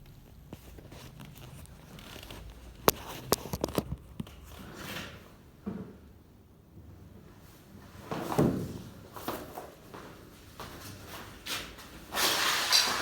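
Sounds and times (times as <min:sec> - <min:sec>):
handling rustling and scraping: 0:00.4 - 0:05.3.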